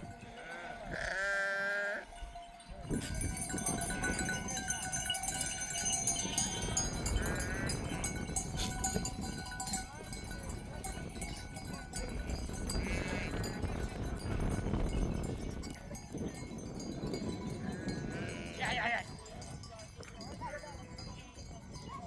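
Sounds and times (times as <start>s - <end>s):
sheep neck bells clinking: 0.0s - 22.0s
sheep bleating: 0.2s - 2.2s, 7.2s - 8.2s, 12.8s - 13.5s, 17.8s - 19.0s.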